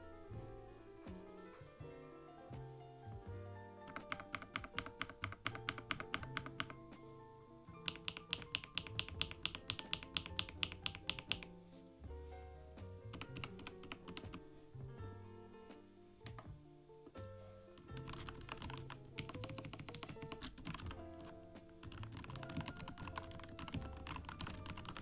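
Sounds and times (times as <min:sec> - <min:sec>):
background music: 0:00.0 - 0:25.0
fast keyboard typing: 0:03.8 - 0:07.0, 0:07.8 - 0:11.6, 0:13.1 - 0:14.4, 0:16.2 - 0:16.5, 0:17.8 - 0:25.0.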